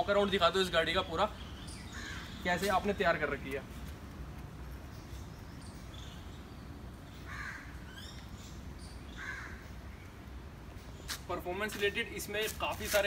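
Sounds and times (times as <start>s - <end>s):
crow cawing: 1.9s - 2.4s, 7.2s - 8.1s, 9.1s - 9.7s.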